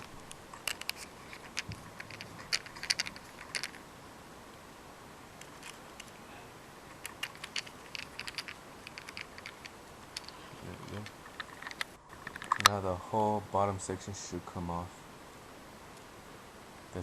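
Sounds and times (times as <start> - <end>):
screwdriver clicking on tiny screw: 7.0 - 10.4.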